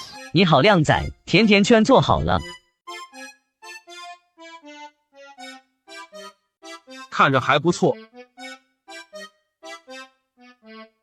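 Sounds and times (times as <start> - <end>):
bouncy accordion-like melody: 2.4 - 11.0.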